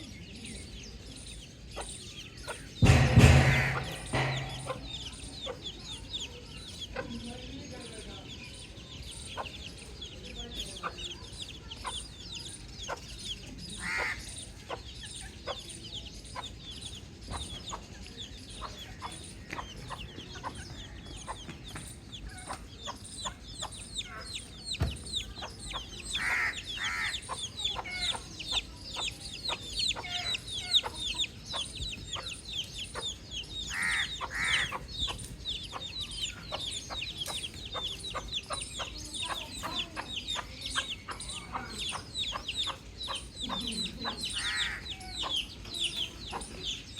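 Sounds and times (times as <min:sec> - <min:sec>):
baby chicks peeping: 0:00.0 - 0:46.9.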